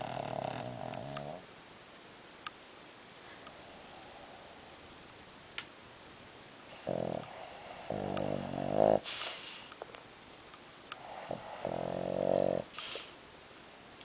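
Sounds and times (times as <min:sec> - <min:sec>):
dog snoring: 0:00.0 - 0:01.4, 0:06.7 - 0:09.6, 0:11.0 - 0:13.1.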